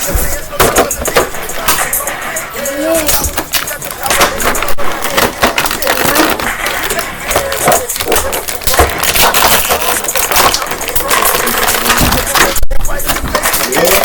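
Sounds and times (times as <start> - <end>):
packaging tearing and crackling: 3.2 - 14.0.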